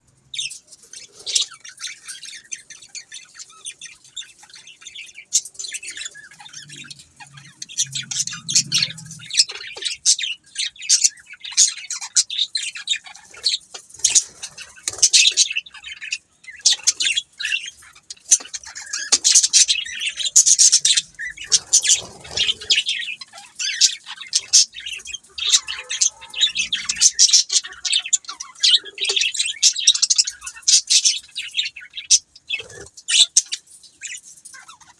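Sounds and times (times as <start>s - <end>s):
budgerigars chirping: 0.3s - 34.9s.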